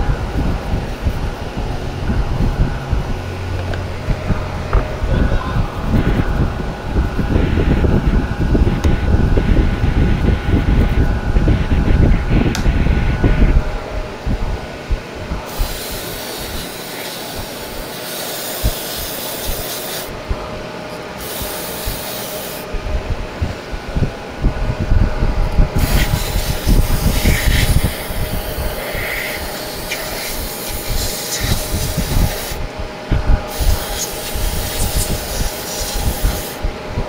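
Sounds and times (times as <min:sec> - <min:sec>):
aerosol spray hissing: 0:15.5 - 0:20.1, 0:21.2 - 0:22.7, 0:25.8 - 0:32.6, 0:33.5 - 0:36.6.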